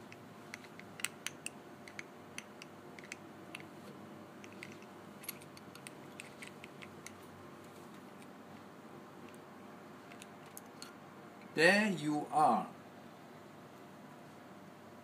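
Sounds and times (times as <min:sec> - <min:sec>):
small metal clicks: 0:00.0 - 0:03.7, 0:04.4 - 0:07.2.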